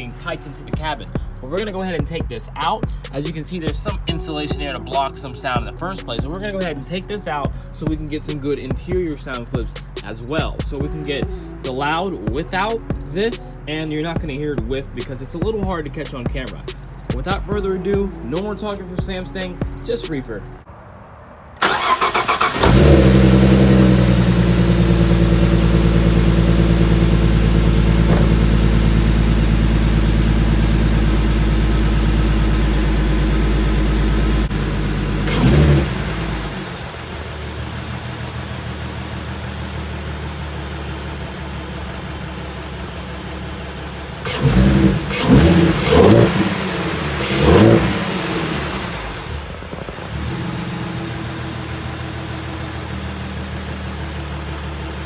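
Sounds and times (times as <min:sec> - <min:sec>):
car engine starting and idling: 0:00.0 - 0:55.0
car engine revving: 0:21.6 - 0:55.0.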